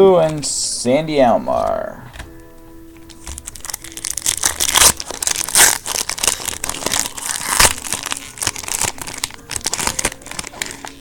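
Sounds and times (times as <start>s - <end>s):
card wrappers tearing and crinkling: 3.1s - 11.0s.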